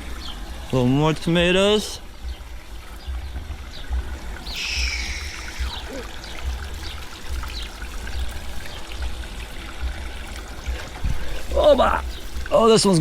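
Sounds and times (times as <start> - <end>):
water trickling: 0.0 - 13.0
brief high hiss: 4.5 - 6.0.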